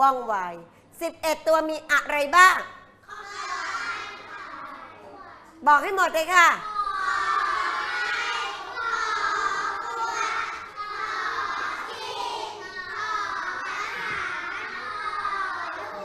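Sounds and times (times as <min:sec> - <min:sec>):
children reciting in chorus: 0:03.0 - 0:05.4, 0:06.6 - 0:16.0.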